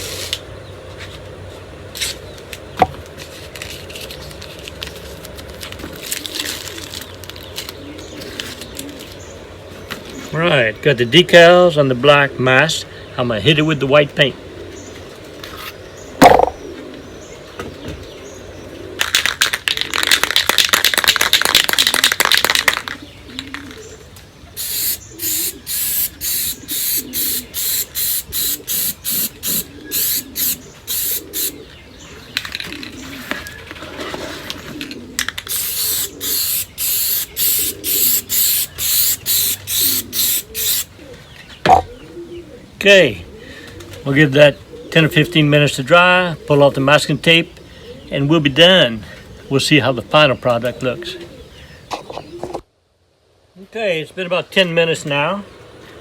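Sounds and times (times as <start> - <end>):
spray can ball rattling: 24.6 - 31.5, 35.4 - 40.9
spray can hissing bursts: 24.6 - 31.5, 35.4 - 40.9.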